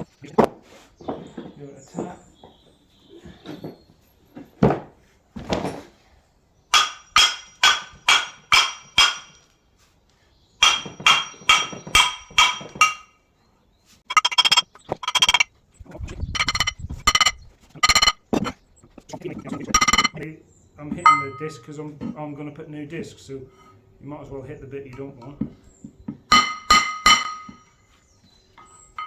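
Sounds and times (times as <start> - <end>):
hammer striking metal brake disc: 26.3 - 27.6.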